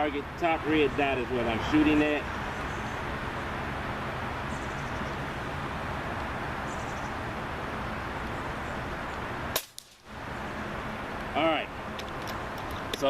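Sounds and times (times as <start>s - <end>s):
outdoor background noise: 0.0s - 13.0s
air rifle shot: 9.5s - 10.0s.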